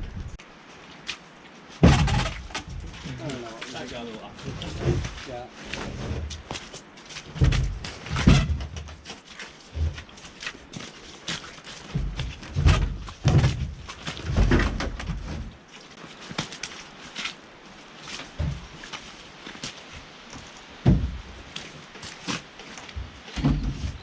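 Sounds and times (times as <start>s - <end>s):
heavy thuds and knocks: 1.8s - 3.4s, 7.3s - 9.0s, 11.9s - 15.5s, 18.4s - 18.7s, 20.8s - 21.4s, 22.9s - 24.0s.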